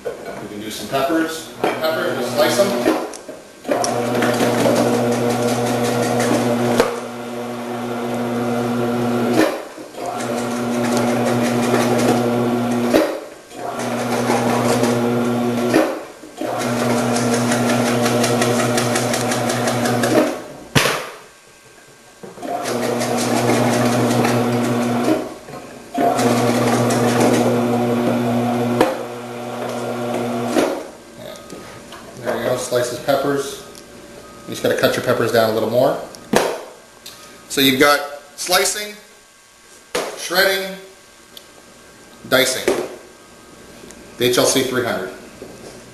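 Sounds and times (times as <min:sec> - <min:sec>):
electric motor humming: 0:03.8 - 0:09.4, 0:10.0 - 0:12.9, 0:13.6 - 0:15.8, 0:16.4 - 0:20.2, 0:22.4 - 0:25.2, 0:26.0 - 0:30.6.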